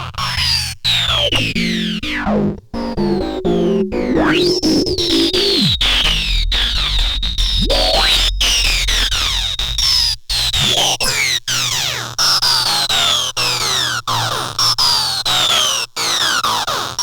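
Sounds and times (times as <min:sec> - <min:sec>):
low bass drone: 0:01.1 - 0:11.2
synth pitch glides: 0:01.2 - 0:10.9.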